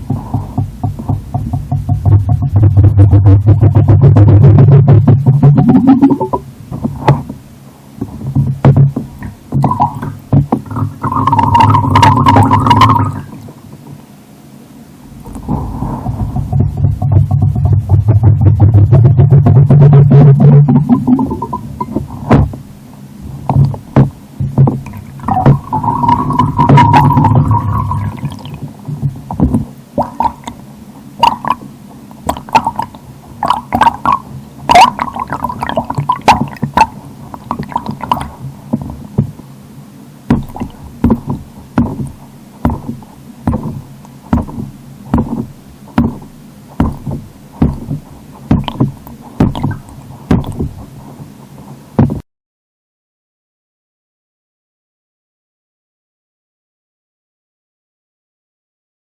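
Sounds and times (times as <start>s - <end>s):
sharp underwater knocks: 0.0s - 7.4s, 8.0s - 13.5s, 15.1s - 22.6s, 23.2s - 30.6s, 31.2s - 39.4s, 40.3s - 51.3s, 52.0s - 52.2s
steady low hum: 0.0s - 52.2s.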